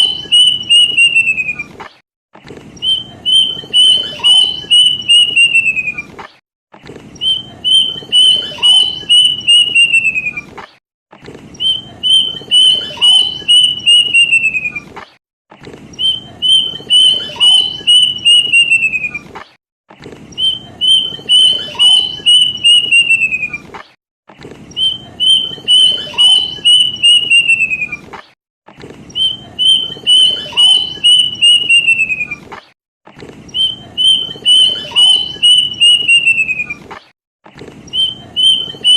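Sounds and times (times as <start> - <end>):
cuckoo whistled song: 0.0 - 1.8, 2.8 - 6.1, 7.2 - 10.5, 11.6 - 14.9, 16.0 - 19.3, 20.4 - 23.7, 24.7 - 28.1, 29.1 - 32.5, 33.5 - 36.9, 37.9 - 38.9.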